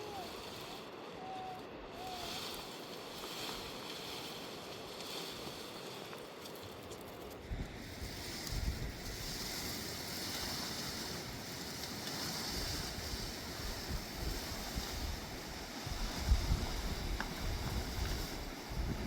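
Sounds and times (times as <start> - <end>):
wind buffeting microphone: 7.3 - 19.0.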